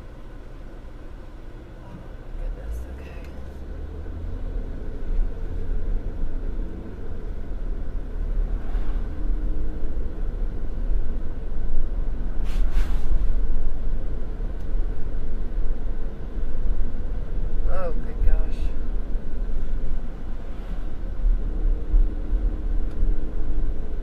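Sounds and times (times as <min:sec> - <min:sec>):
car driving at low speed: 0:00.0 - 0:24.0.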